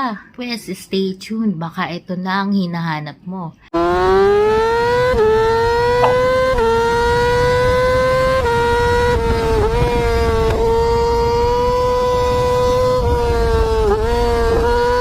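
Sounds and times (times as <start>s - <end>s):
racing engine whining at high revs: 3.7s - 15.0s.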